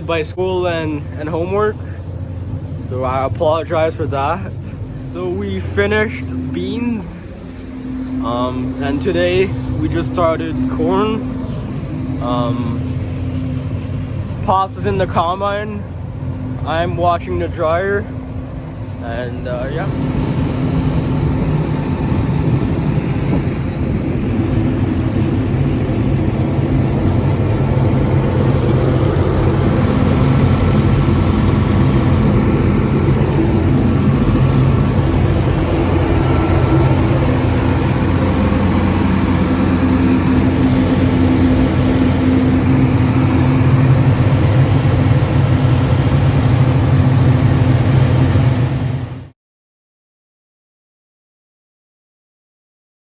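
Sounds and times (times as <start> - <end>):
grain dryer droning: 0.0 - 49.3.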